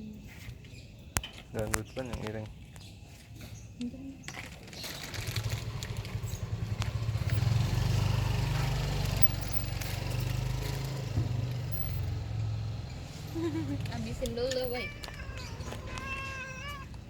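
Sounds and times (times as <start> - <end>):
vehicle engine running: 5.2 - 14.1.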